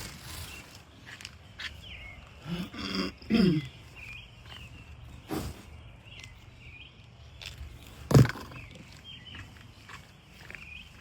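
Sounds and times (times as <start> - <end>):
rustling noises: 0.0 - 2.4.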